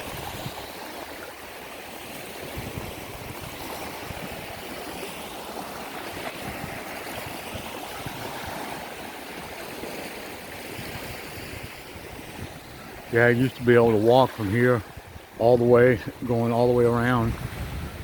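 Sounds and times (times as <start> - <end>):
sea waves washing ashore: 0.0 - 18.0
wind rumbling on microphone: 0.0 - 18.0.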